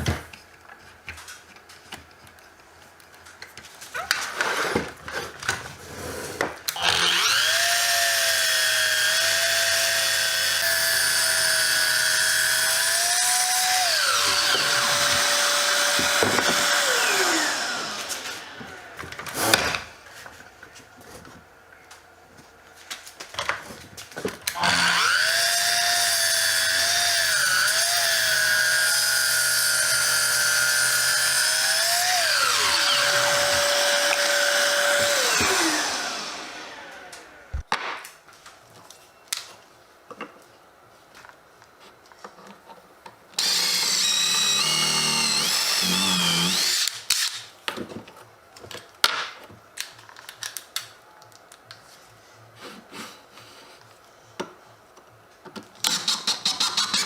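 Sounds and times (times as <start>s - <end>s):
small power tool motor whining: 6.7s - 19.6s, 24.6s - 37.4s, 43.4s - 47.3s.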